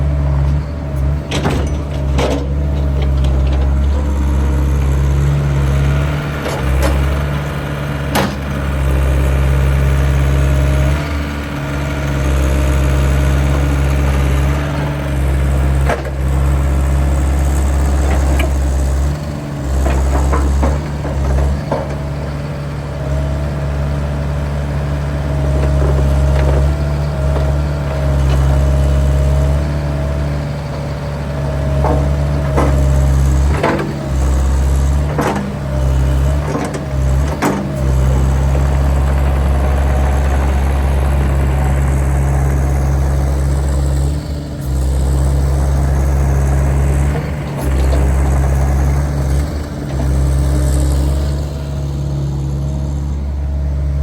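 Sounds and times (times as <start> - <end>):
excavator diesel engine: 0.0 - 54.0
sharp knocks and clanks: 1.2 - 4.2, 19.7 - 22.1, 31.7 - 38.1.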